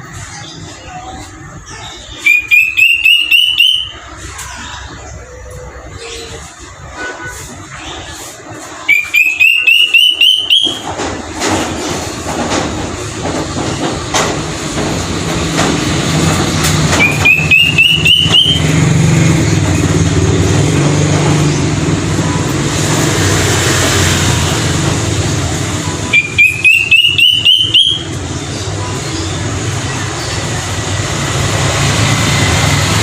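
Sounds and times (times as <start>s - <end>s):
cuckoo whistled call: 2.2s - 4.2s, 8.9s - 10.9s, 17.0s - 18.8s, 26.0s - 28.2s.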